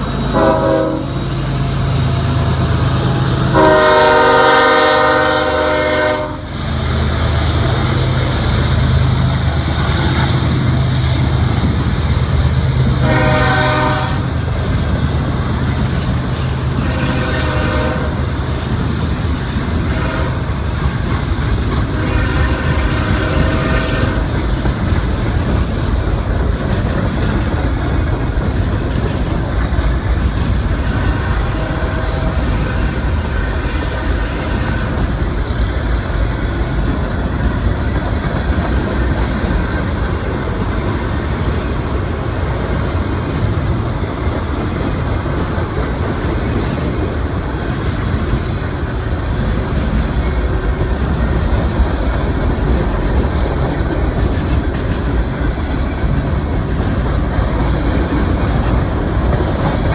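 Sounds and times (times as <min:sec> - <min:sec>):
locomotive air horn blasts: 0:00.3 - 0:01.3, 0:03.5 - 0:06.6, 0:13.0 - 0:14.4, 0:16.8 - 0:18.3, 0:19.9 - 0:20.5, 0:22.0 - 0:24.2, 0:31.2 - 0:32.4.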